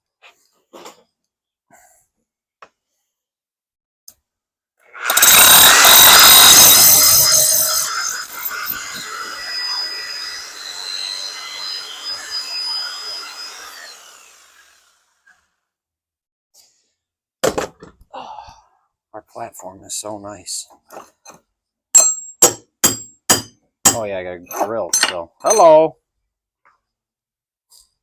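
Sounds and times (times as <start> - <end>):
hammer drill boring: 4.9 - 15.4.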